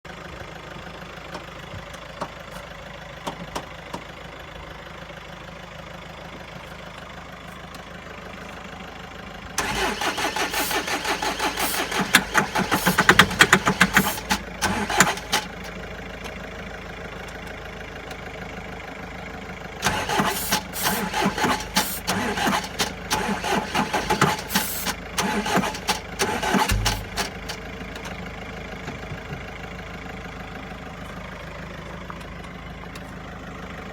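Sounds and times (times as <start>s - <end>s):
starter motor cranking diesel engine: 7.9s - 33.9s.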